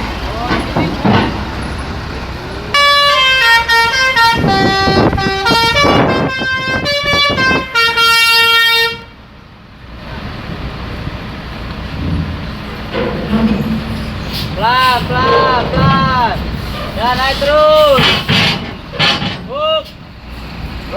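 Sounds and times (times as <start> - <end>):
vehicle engine noise: 0.0 - 20.9
bus musical horn melody: 2.7 - 9.2.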